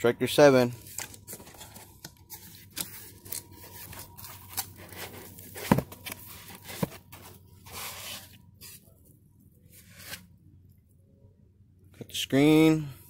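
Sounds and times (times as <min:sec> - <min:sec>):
cardboard box and packing handled: 0:00.8 - 0:08.8.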